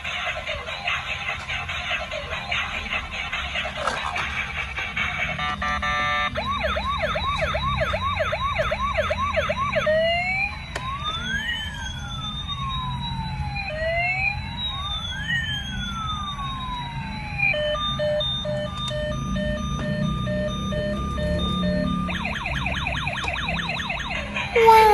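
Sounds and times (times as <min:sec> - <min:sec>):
toy ambulance siren: 0:00.0 - 0:24.9
pulsed electronic beeping: 0:04.5 - 0:10.5, 0:15.4 - 0:24.6.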